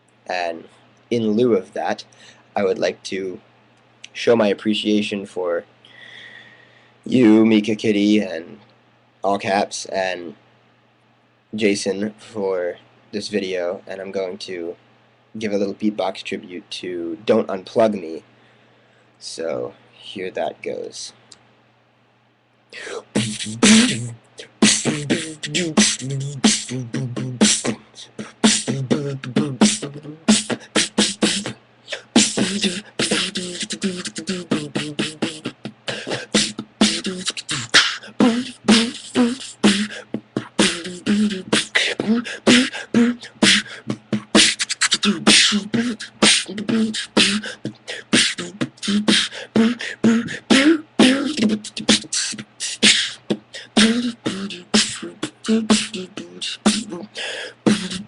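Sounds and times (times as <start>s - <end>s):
person beatboxing: 22.8s - 58.0s.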